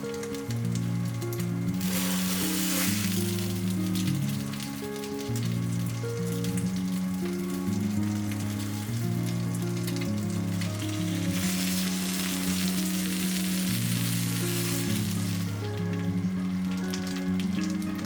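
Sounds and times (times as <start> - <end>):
background music with low notes: 0.0 - 18.0
food sizzling on a grill plate: 1.8 - 5.4, 8.2 - 15.8.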